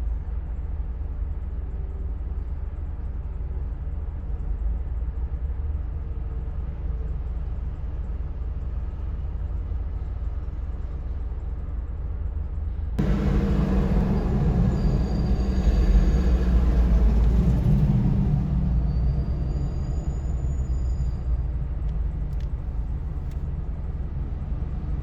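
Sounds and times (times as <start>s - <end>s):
diesel engine rumbling: 11.7s - 23.6s.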